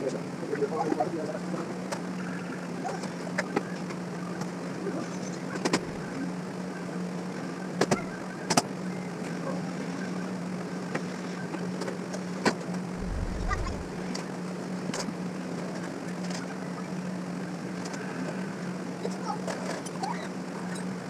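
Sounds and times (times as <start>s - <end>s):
steady low hum: 0.0s - 15.9s
low rumble: 12.9s - 14.1s.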